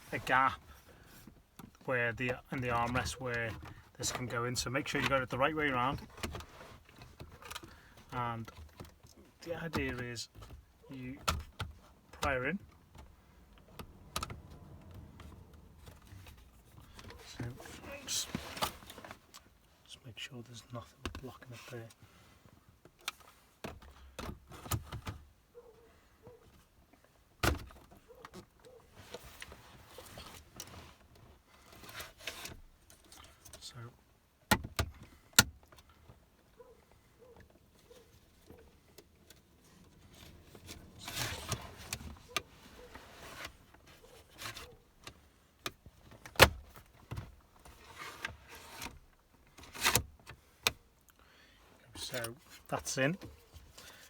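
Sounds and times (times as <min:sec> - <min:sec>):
plastic rubbing and scraping: 0:37.7 - 0:45.2.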